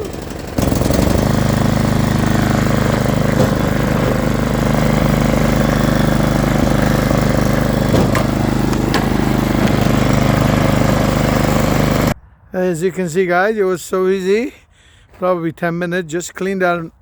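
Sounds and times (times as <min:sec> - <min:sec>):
small gas engine running: 0:00.0 - 0:12.2.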